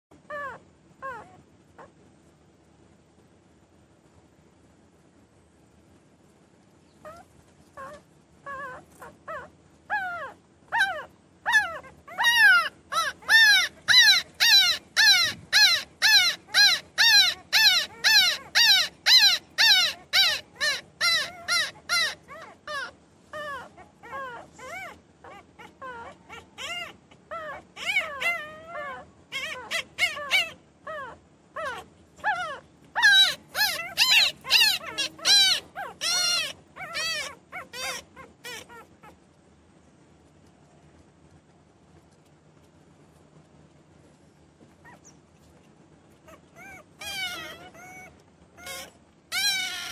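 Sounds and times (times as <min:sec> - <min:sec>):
puppies crying and whining: 0:00.3 - 0:01.9, 0:07.0 - 0:39.2, 0:46.2 - 0:49.9.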